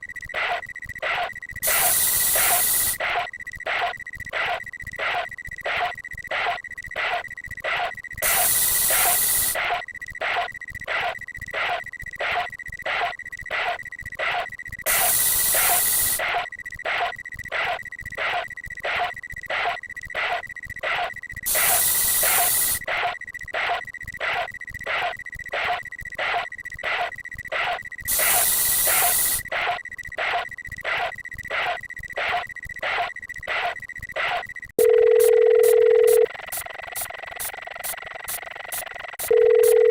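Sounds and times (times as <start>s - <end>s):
quick regular ticks: 0.2s - 39.9s
aerosol spray can hissing: 21.5s - 22.8s, 36.5s - 38.9s
steady high tone: 39.2s - 39.9s.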